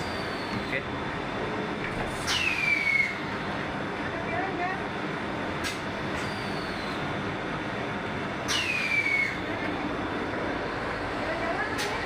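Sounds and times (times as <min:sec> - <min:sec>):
machine hum: 0:00.0 - 0:12.0
short falling squeal: 0:02.3 - 0:03.2, 0:08.5 - 0:09.4.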